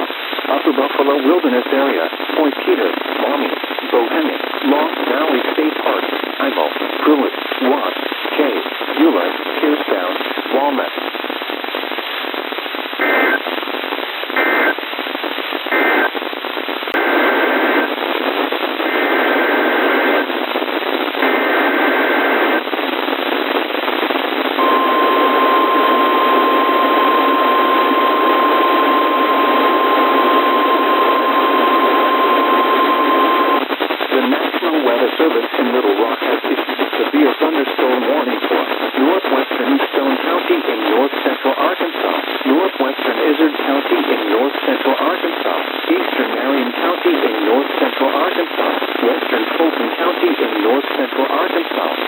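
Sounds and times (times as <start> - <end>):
radio static hiss: 0.0 - 52.0
steady alert tone: 24.6 - 33.6
warbling two-tone data bursts: 24.6 - 33.6.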